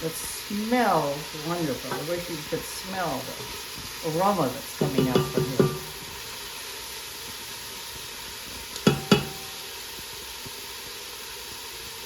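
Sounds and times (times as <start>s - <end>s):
vegetables sizzling in oil: 0.0s - 12.0s
utensil clinking against pot: 4.8s - 6.0s, 8.8s - 9.6s.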